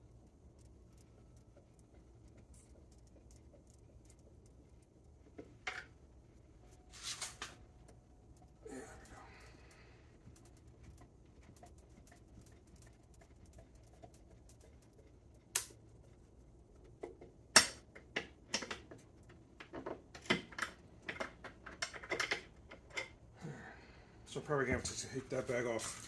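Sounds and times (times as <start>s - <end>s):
metal parts clicking and rattling: 18.5s - 23.2s.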